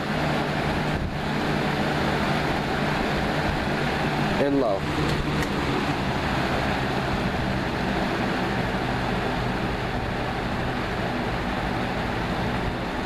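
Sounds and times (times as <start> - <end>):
box fan running: 0.0 - 13.0.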